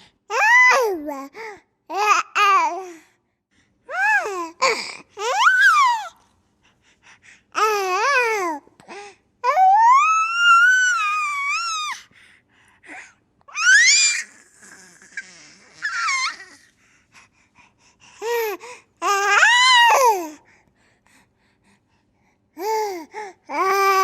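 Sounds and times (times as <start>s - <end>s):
baby squealing: 13.5s - 16.6s.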